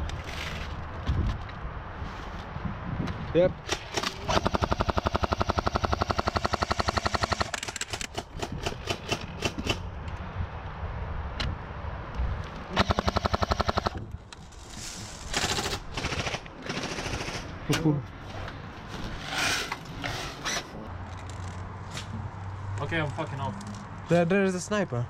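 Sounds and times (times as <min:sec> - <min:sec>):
airsoft gun firing full-auto: 0:03.8 - 0:07.6, 0:12.8 - 0:14.0.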